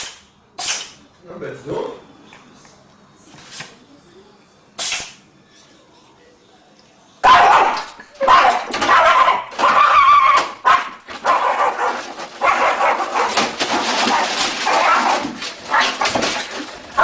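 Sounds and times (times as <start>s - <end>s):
animal cries: 7.2s - 13.3s.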